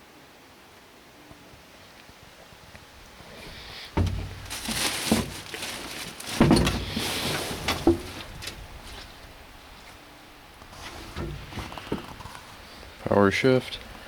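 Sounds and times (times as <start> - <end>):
rustling: 3.1 - 13.1
heavy clunks of steel: 3.9 - 8.7, 11.0 - 12.4.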